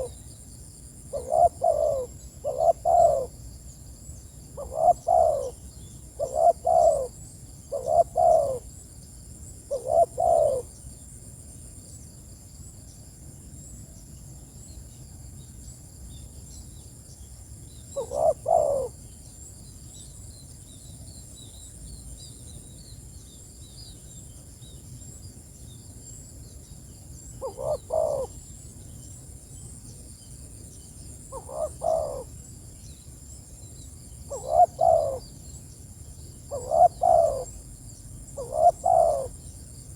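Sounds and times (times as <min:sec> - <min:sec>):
small birds chirping: 0:01.1 - 0:03.3, 0:04.0 - 0:07.1, 0:07.7 - 0:08.7, 0:16.2 - 0:39.9
dove cooing: 0:01.1 - 0:03.4, 0:04.6 - 0:05.6, 0:06.2 - 0:08.7, 0:09.7 - 0:10.7, 0:17.9 - 0:19.0, 0:27.4 - 0:28.4, 0:31.3 - 0:32.4, 0:34.3 - 0:35.3, 0:36.5 - 0:37.6, 0:38.4 - 0:39.4.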